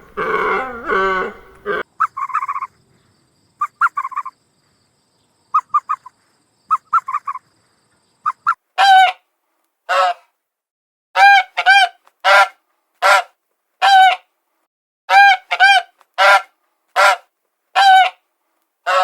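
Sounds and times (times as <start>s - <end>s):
large bird honking: 0.0s - 2.6s.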